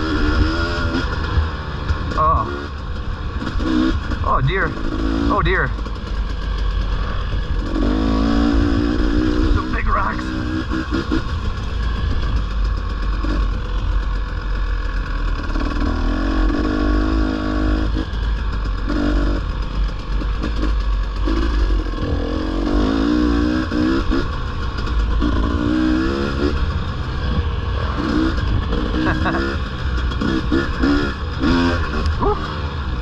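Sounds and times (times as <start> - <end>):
dirt bike engine revving: 0.0 - 33.0.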